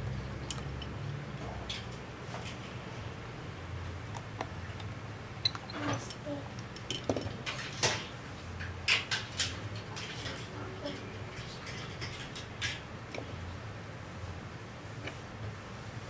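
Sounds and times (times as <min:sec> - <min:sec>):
metal tools clicking on workbench: 0:00.4 - 0:01.0, 0:05.4 - 0:08.1.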